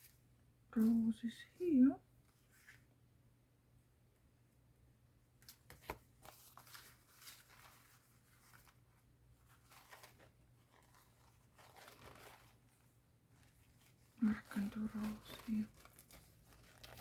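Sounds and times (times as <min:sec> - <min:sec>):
paper rustling and crinkling: 0:05.4 - 0:17.0.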